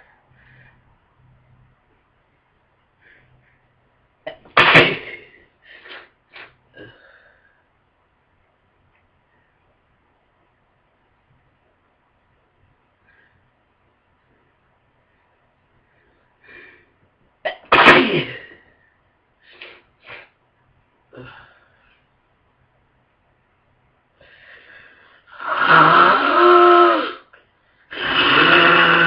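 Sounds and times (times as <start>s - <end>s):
person sneezing: 4.3s - 7.1s, 17.5s - 18.6s
short sniffs: 5.7s - 6.6s, 19.5s - 20.4s
nose being blown: 25.3s - 27.3s, 27.9s - 29.0s.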